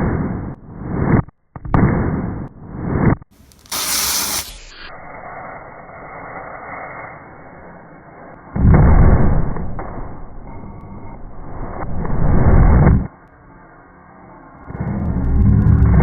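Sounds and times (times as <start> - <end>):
firecracker bang: 3.4 - 4.9
firecracker fuse hiss: 3.4 - 8.1.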